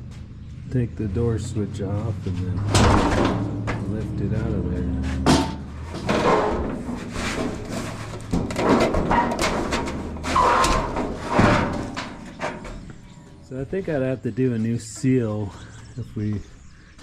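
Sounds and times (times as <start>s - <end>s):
sheet metal clanking: 2.4s - 15.5s
metal parts scraping and clattering: 5.2s - 13.5s.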